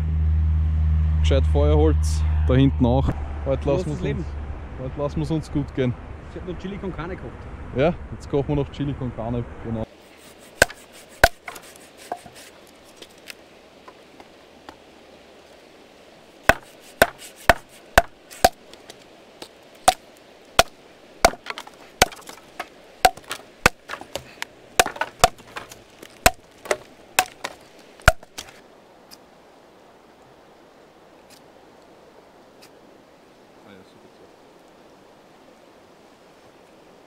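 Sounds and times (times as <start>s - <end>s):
wood being chopped: 10.6s - 12.4s, 16.5s - 18.7s, 19.4s - 28.6s.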